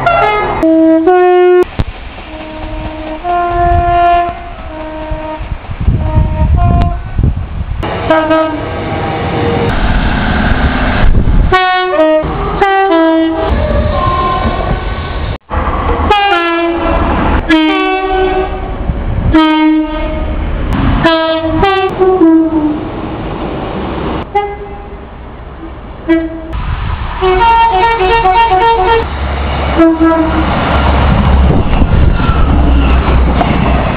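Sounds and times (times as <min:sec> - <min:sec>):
two-tone train horn blasts: 0:00.0 - 0:01.7, 0:02.3 - 0:07.2, 0:08.0 - 0:08.8, 0:11.5 - 0:14.6, 0:16.1 - 0:20.4, 0:21.0 - 0:22.9, 0:24.3 - 0:25.0, 0:26.1 - 0:26.6, 0:27.2 - 0:29.1, 0:29.8 - 0:30.5
train rumbling: 0:00.0 - 0:33.9.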